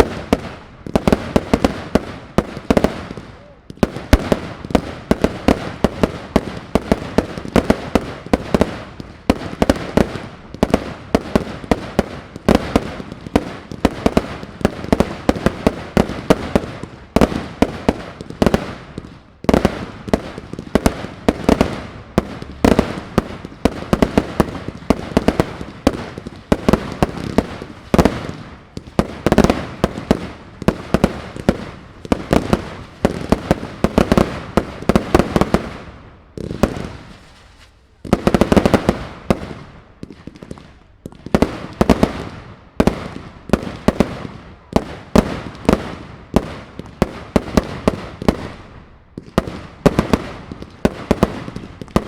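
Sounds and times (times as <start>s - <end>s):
fireworks bursts and bangs: 0.0s - 52.0s.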